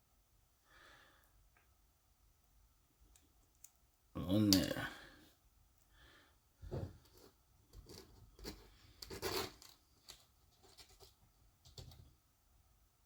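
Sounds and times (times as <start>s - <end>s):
small parts clicking and rustling: 3.0s - 4.7s
scrapes and taps: 6.7s - 12.1s.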